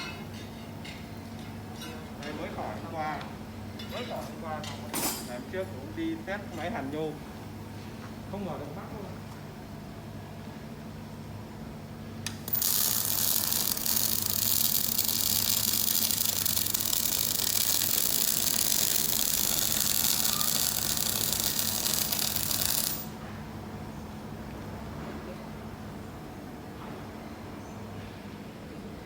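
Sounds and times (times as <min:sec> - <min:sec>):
welding arc crackling hiss: 0:12.3 - 0:23.1.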